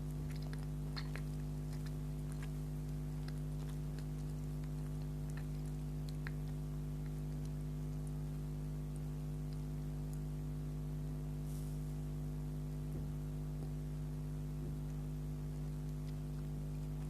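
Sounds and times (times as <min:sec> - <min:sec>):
chewing and mouth clicks: 0:00.0 - 0:10.3, 0:14.8 - 0:17.0
steady electrical hum: 0:00.0 - 0:17.0.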